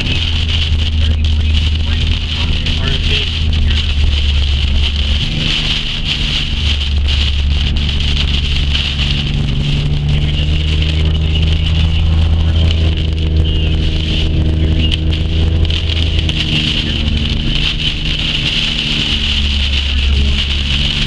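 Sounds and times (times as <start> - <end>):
car engine and road noise: 0.0 - 21.0
constant hiss: 0.0 - 21.0.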